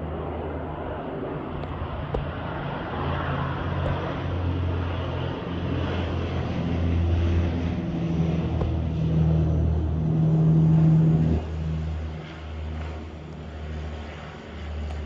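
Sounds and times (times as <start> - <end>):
engine drone: 0.0 - 15.0.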